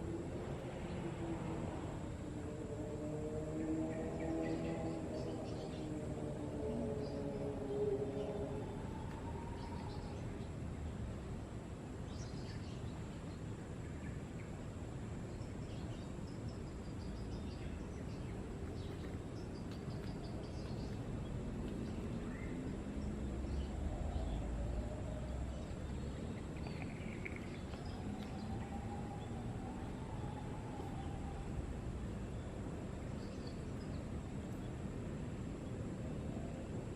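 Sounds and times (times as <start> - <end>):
low wavering call: 6.7 - 10.3, 26.6 - 31.7
faint bird chirps: 23.4 - 31.4.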